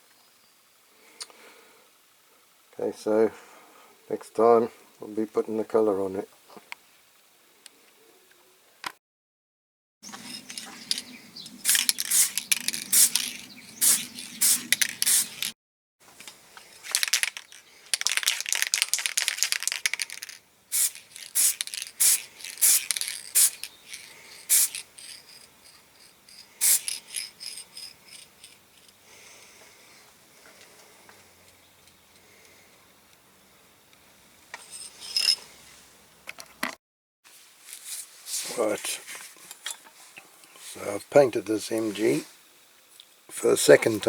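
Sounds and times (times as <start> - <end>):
small hard objects rattling: 10.1 - 15.5, 16.6 - 29.0.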